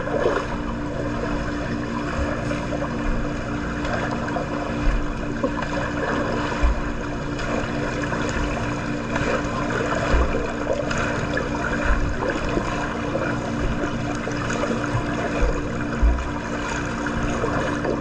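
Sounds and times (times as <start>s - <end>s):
steady low hum: 0.0s - 18.0s
water splashing and churning: 0.0s - 18.0s
dull low thumps: 4.6s - 5.5s, 6.5s - 7.2s, 10.0s - 10.8s, 11.7s - 12.6s, 13.6s - 14.3s, 14.9s - 16.5s.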